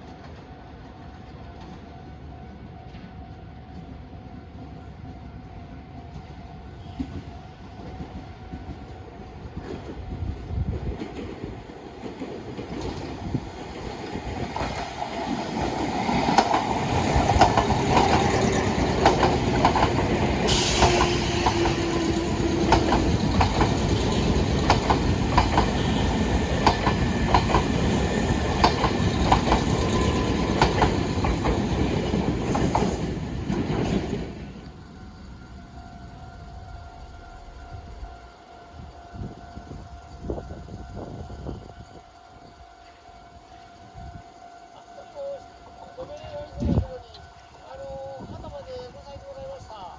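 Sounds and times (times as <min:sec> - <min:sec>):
train wheels clacking over rail joints: 0:14.4 - 0:34.3
faint train motor whine: 0:20.5 - 0:31.0, 0:34.6 - 0:48.8.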